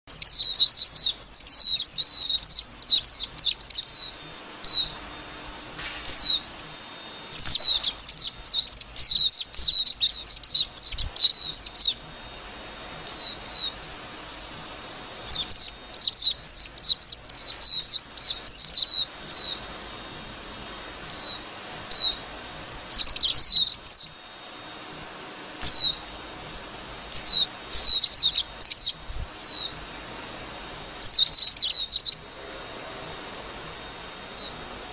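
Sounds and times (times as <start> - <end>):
bird twittering: 0.1 - 19.8, 20.4 - 24.2, 25.6 - 32.8, 33.7 - 34.9.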